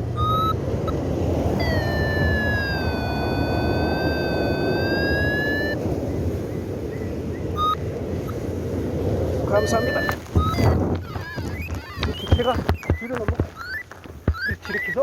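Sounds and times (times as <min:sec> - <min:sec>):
wind buffeting microphone: 0:00.0 - 0:15.0
high electronic tone: 0:00.2 - 0:05.8, 0:07.6 - 0:07.8, 0:09.5 - 0:15.0.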